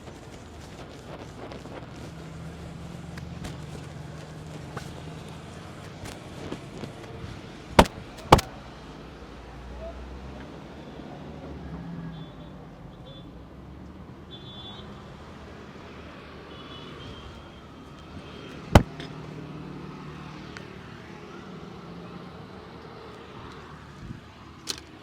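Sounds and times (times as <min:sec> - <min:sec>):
street traffic: 0:00.0 - 0:25.0.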